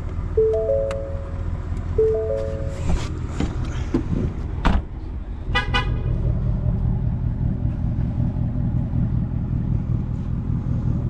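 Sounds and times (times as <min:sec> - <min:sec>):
car engine idling: 0:00.0 - 0:11.0
car horn toots: 0:05.5 - 0:06.1.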